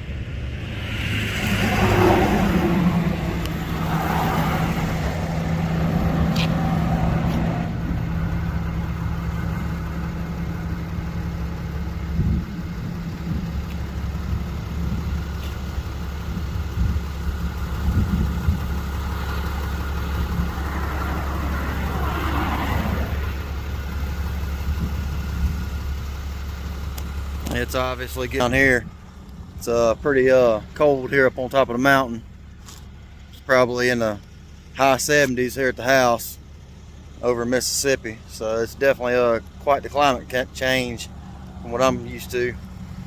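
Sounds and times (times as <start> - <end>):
whooshing noise: 0.0 - 8.1
diesel engine humming: 0.0 - 43.0.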